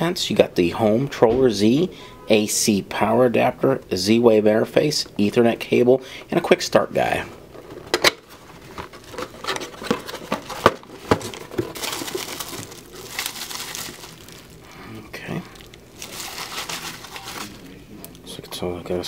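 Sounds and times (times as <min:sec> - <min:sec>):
wrapping crinkling and rustling: 0:07.6 - 0:17.8.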